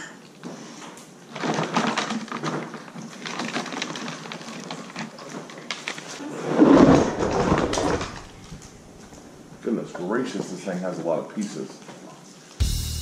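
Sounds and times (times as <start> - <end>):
parts clicking and rustling: 0.8 - 6.2
rumbling handling noise: 1.4 - 9.6.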